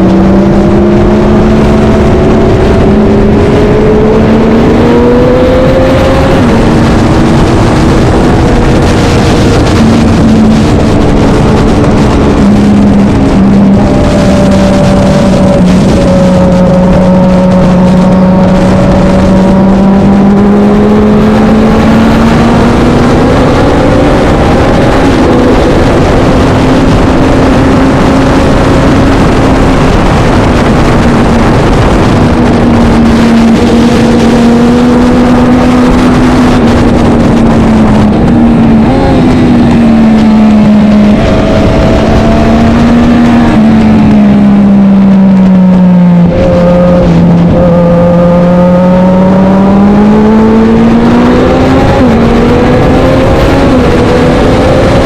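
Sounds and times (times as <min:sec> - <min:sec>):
racing motorcycle engine at high revs: 0:00.0 - 0:55.0.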